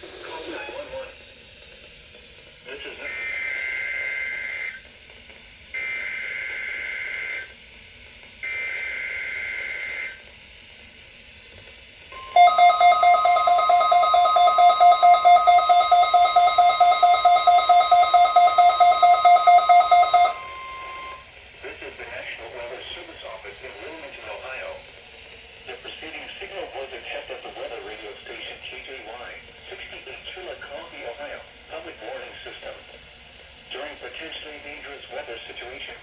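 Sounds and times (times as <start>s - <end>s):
rapid alarm beeping: 12.2s - 21.2s
steady warning alarm tone: 12.2s - 21.3s.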